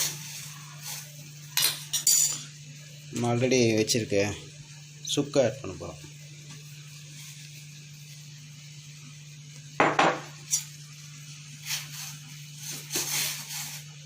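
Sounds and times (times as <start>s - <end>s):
steady low hum: 0.2s - 14.0s
metal utensils clinking on pots: 1.6s - 2.4s.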